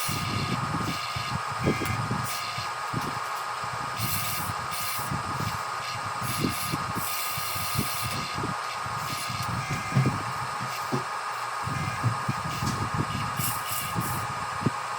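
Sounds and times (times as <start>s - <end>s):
electric motor whine: 0.0s - 14.9s
hiss: 3.4s - 8.2s, 12.5s - 14.4s
low knocks and clunks: 9.9s - 11.1s.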